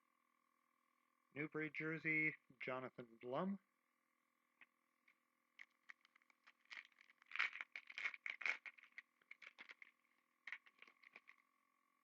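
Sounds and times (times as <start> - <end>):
foil wrapper crinkling: 5.6 - 11.4.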